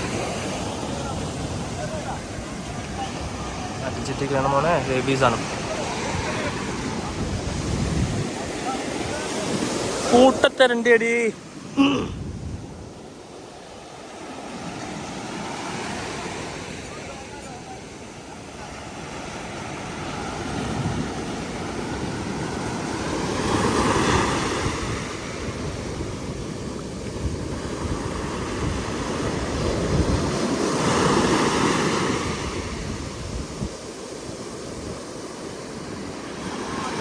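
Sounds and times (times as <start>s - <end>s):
wind buffeting microphone: 0.0s - 10.2s, 12.0s - 13.4s, 16.9s - 36.8s
sea waves washing in: 0.0s - 37.0s.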